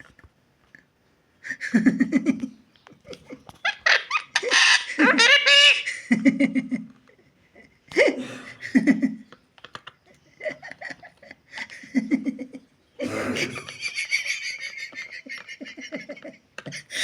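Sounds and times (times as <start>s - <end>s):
parrot squawky calls: 3.7s - 5.9s
parrot laugh-like bursts: 3.7s - 6.6s, 13.4s - 17.0s.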